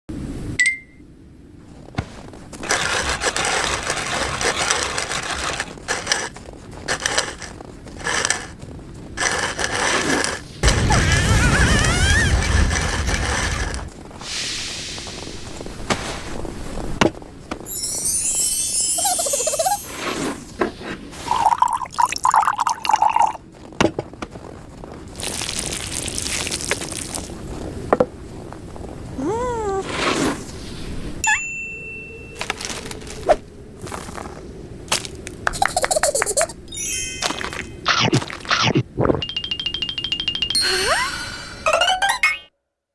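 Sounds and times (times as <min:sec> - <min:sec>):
crunching and crackling: 0:01.8 - 0:14.2, 0:23.1 - 0:29.1, 0:32.4 - 0:35.6
hissing rush of pouring: 0:12.3 - 0:15.6
high beep: 0:39.2 - 0:42.4.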